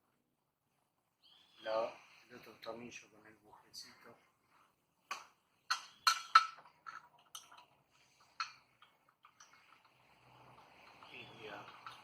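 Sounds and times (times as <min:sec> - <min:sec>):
clicks and knocks of metal parts: 0:05.1 - 0:12.0.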